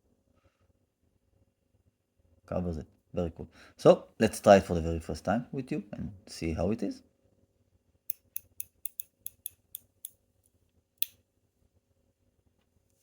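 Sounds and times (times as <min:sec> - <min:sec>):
metal slider fidget clicking: 0:08.1 - 0:10.1.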